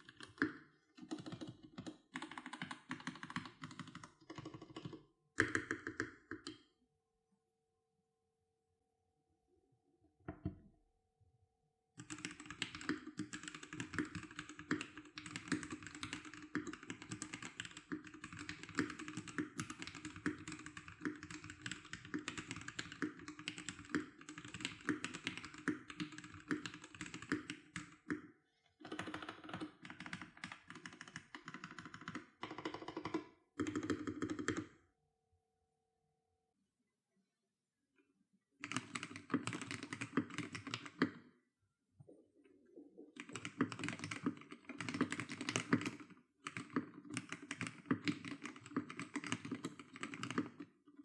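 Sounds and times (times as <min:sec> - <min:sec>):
mechanical keyboard typing: 0:00.0 - 0:06.6, 0:12.0 - 0:28.2, 0:28.8 - 0:34.8, 0:38.6 - 0:41.2, 0:43.2 - 0:51.0.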